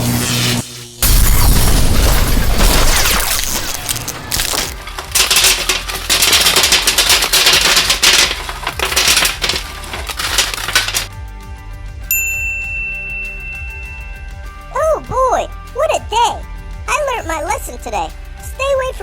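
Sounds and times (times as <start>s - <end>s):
electrical crackling and snapping: 1.0s - 11.1s.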